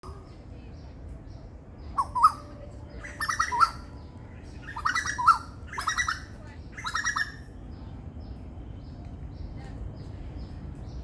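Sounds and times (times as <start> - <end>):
bird chattering calls: 1.9 - 3.8, 4.6 - 7.4.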